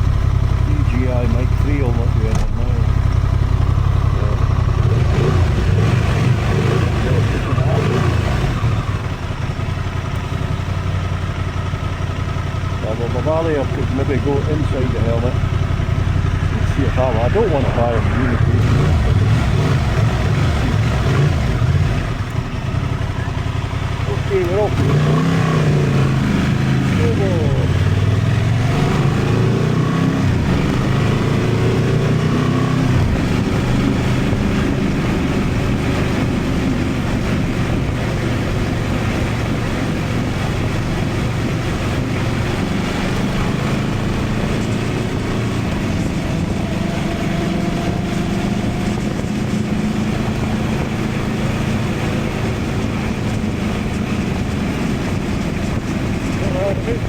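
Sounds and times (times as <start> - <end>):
motorcycle engine running: 0.0 - 57.0
riding wind rush: 13.0 - 23.4, 24.0 - 57.0.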